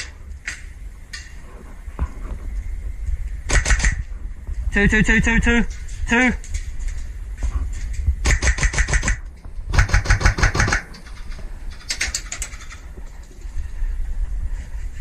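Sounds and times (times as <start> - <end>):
airsoft guns firing bursts: 3.5 - 4.0, 8.2 - 11.0.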